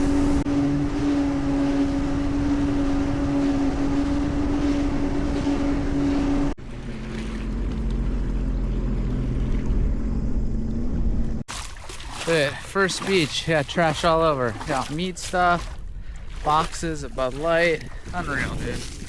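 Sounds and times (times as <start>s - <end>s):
rushing wind and water: 0.0s - 19.0s
watercraft engine drone: 0.0s - 19.0s.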